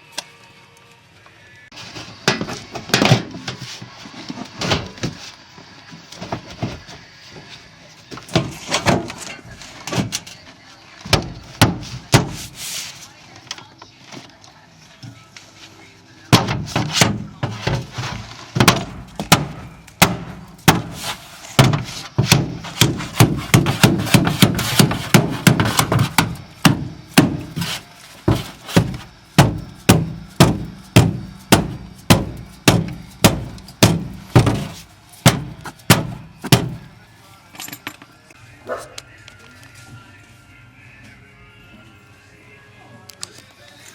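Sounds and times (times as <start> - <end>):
hammer blows on sheet metal: 18.6 - 36.9.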